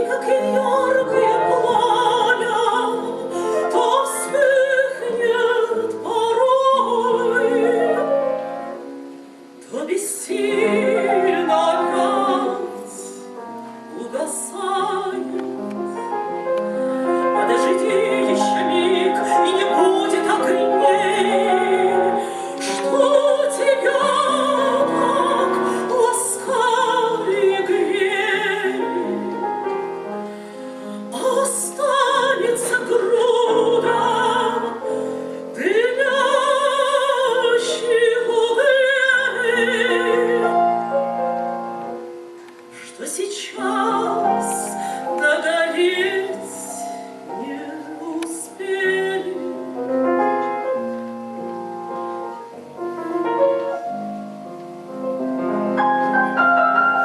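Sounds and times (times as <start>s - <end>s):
woman singing operatically: 0.0s - 8.5s, 9.6s - 13.3s, 13.9s - 15.6s, 17.2s - 29.4s, 31.0s - 40.8s, 42.8s - 49.8s
piano accompaniment: 0.0s - 57.0s.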